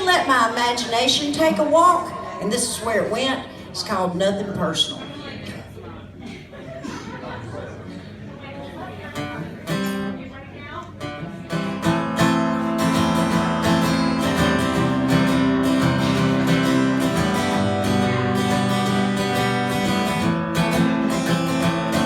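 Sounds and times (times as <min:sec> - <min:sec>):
acoustic guitar strumming: 0:09.2 - 0:10.3, 0:11.0 - 0:22.0.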